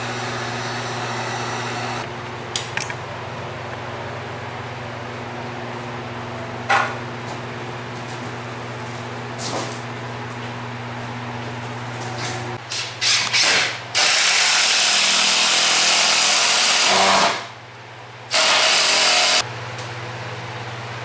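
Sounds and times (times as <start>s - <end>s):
power tool whining: 0.0s - 2.1s, 18.3s - 19.4s
steady background hum: 0.0s - 21.0s.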